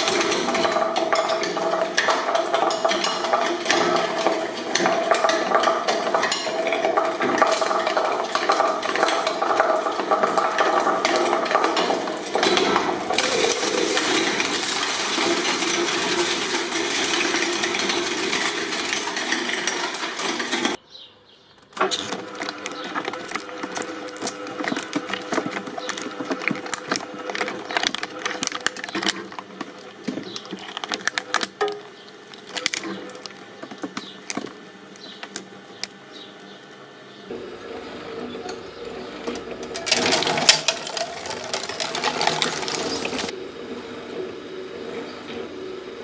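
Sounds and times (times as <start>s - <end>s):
shredder motor hum: 3.6s - 20.8s, 37.3s - 43.3s
metallic clattering and clinking: 39.6s - 43.3s.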